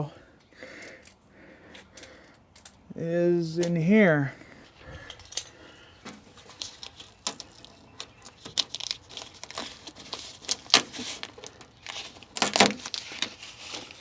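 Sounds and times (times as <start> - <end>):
hands rustling inside car door: 5.3 - 14.0.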